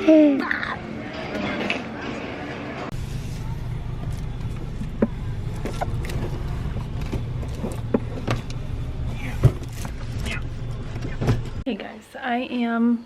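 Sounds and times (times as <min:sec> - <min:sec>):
car road noise rumble: 0:02.9 - 0:11.6.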